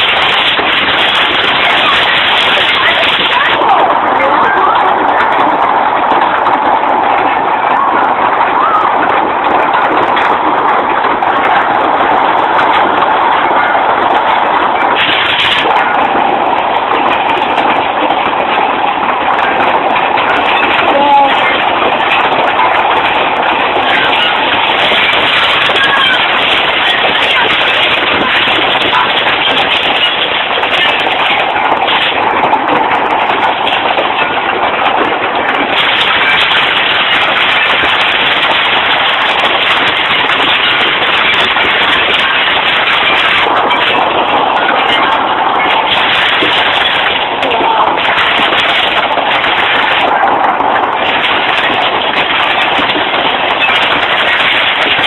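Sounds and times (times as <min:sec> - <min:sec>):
hailstones striking hard surfaces: 0:00.0 - 0:55.0.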